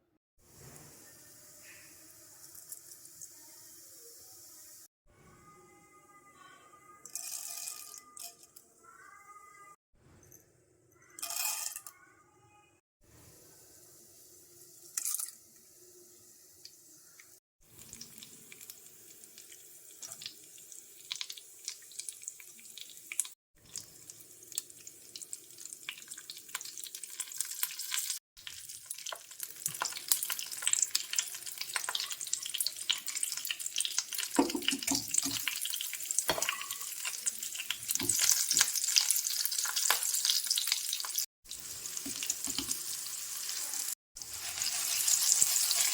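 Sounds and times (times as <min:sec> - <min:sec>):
hot oil sizzling and crackling: 0:13.5 - 0:45.9.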